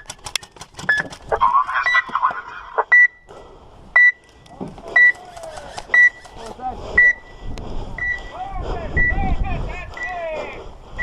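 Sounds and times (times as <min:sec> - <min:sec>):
short high beeps: 0:02.9 - 0:03.3, 0:04.0 - 0:04.2, 0:05.0 - 0:05.2, 0:05.9 - 0:06.3, 0:07.0 - 0:07.3, 0:08.0 - 0:08.3.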